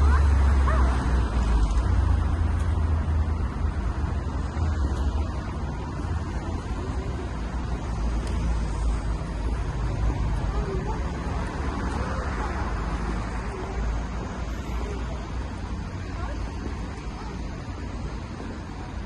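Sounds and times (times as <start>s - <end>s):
street traffic rumble: 0.0s - 19.0s
faint voices: 6.3s - 19.0s.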